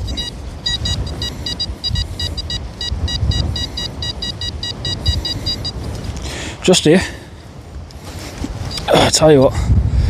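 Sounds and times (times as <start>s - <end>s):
metal detector beeping: 0.0s - 6.0s, 8.7s - 9.1s
wind rumbling on microphone: 0.0s - 10.0s.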